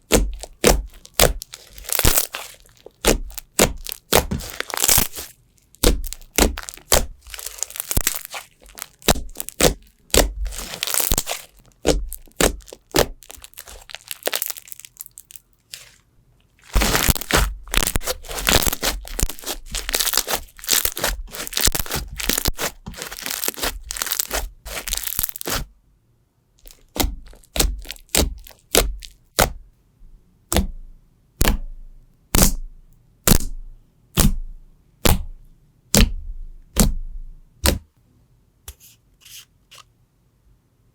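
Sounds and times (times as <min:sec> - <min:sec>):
slime crackling pops: 0:00.1 - 0:15.2, 0:16.7 - 0:25.6.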